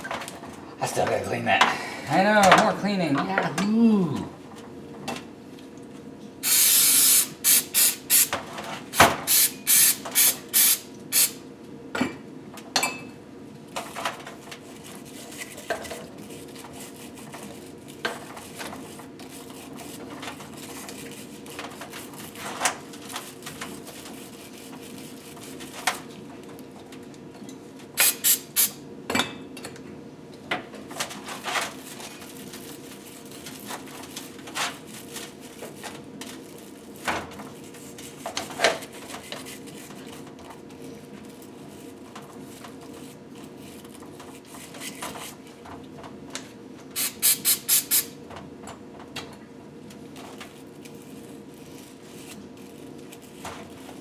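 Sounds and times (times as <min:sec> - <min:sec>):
hissing spray bursts: 0:06.4 - 0:08.3, 0:09.0 - 0:11.4, 0:28.0 - 0:28.8, 0:47.0 - 0:48.1.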